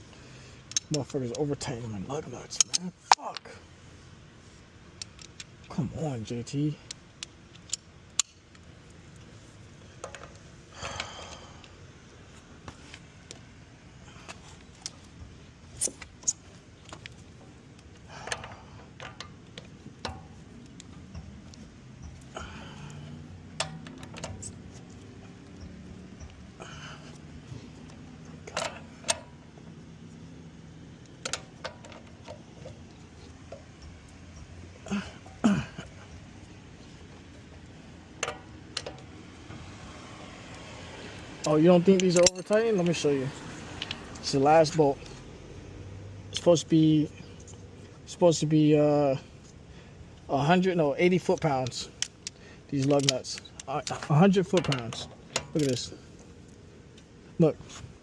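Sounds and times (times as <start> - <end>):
metal tools clicking: 0.7 - 1.4, 2.6 - 3.6, 41.4 - 43.0, 51.2 - 56.0
metal tool scraping: 15.8 - 16.4.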